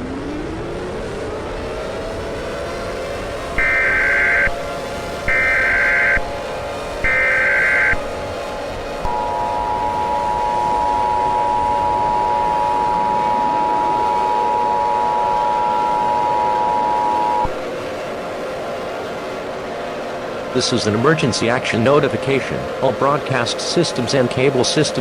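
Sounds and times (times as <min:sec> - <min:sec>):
steady low drone: 0:00.0 - 0:25.0
two-tone attention signal: 0:03.6 - 0:04.7, 0:05.3 - 0:06.4, 0:07.0 - 0:08.1, 0:09.1 - 0:17.6
screechy data tones: 0:03.6 - 0:08.2, 0:09.1 - 0:17.6.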